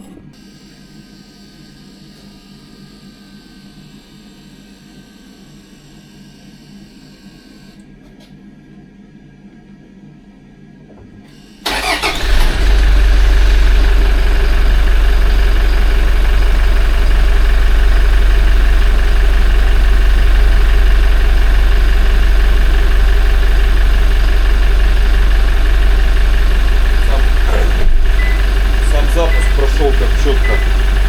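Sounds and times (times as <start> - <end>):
diesel engine starting and idling: 11.6 - 31.0.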